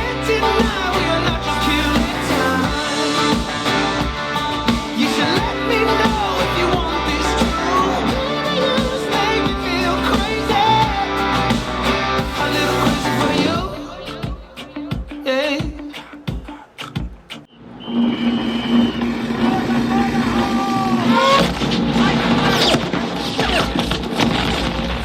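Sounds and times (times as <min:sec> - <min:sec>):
rock ballad over speakers: 0:00.0 - 0:16.5.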